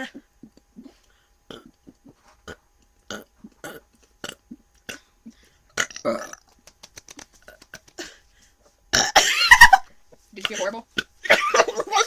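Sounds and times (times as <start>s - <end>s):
short burps: 1.5s - 5.1s, 5.8s - 6.5s, 8.9s - 9.3s
people talking: 10.4s - 12.0s.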